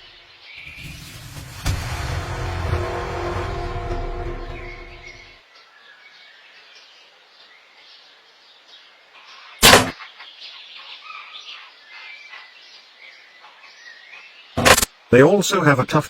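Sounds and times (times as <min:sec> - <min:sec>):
small birds chirping: 0:05.5 - 0:14.6
bow shot: 0:09.6 - 0:10.0, 0:14.6 - 0:14.9.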